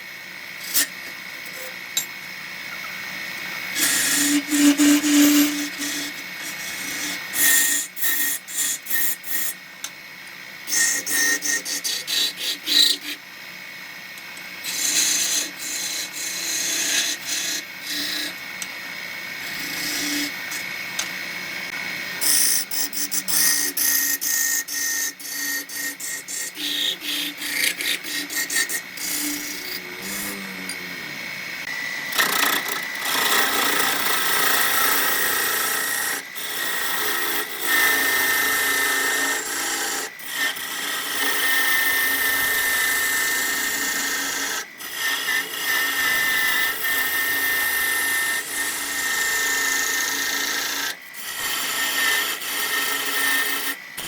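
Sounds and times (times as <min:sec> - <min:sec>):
wood lathe whining: 0:00.4 - 0:09.6, 0:10.6 - 0:13.5, 0:14.4 - 0:54.0
tool scraping spinning wood: 0:03.7 - 0:09.6, 0:19.3 - 0:43.0.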